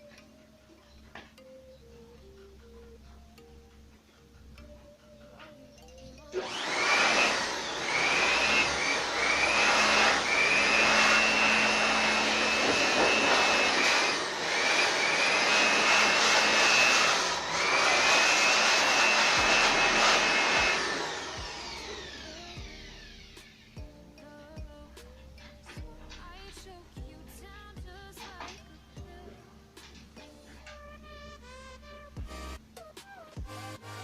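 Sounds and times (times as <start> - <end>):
electric motor blowing air: 6.4 - 23.8.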